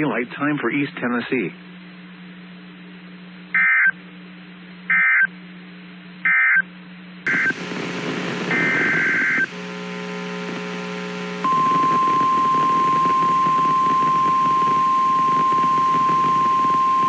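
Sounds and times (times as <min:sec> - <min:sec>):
low hum: 0:06.8 - 0:17.0
several steady tones together: 0:07.3 - 0:17.0.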